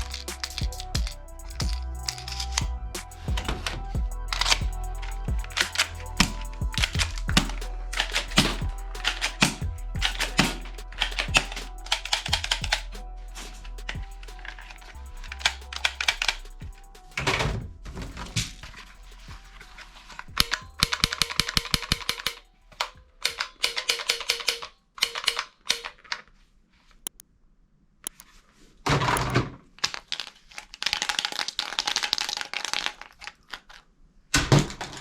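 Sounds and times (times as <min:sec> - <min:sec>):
toy guns rapid clicking: 0:20.4 - 0:22.4, 0:23.2 - 0:26.0.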